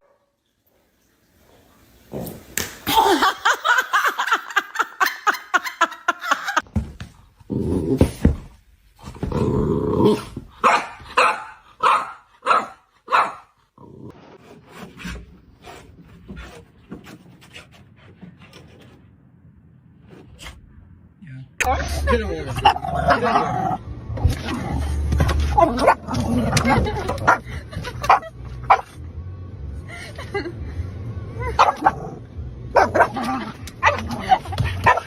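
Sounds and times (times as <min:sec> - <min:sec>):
dog barking: 0:10.6 - 0:13.5, 0:28.1 - 0:29.0, 0:31.6 - 0:32.1, 0:32.7 - 0:34.1.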